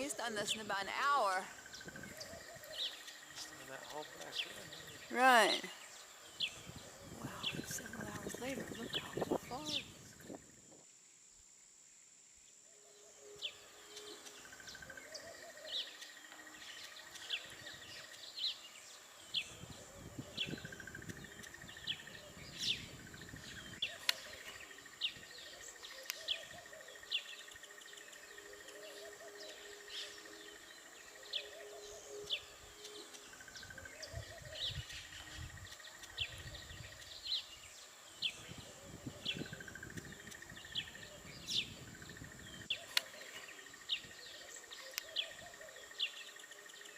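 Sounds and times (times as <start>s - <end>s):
birds chirping: 0.0s - 10.6s, 12.7s - 46.9s
high-pitched insect whine: 0.0s - 46.9s
insect trill: 0.0s - 46.9s.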